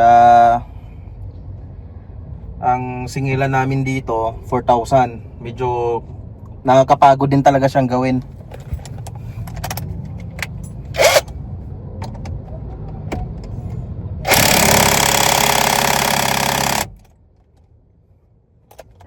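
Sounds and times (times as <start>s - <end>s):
low steady hum: 0.0s - 19.0s
power tool running: 11.0s - 11.2s, 14.3s - 17.0s.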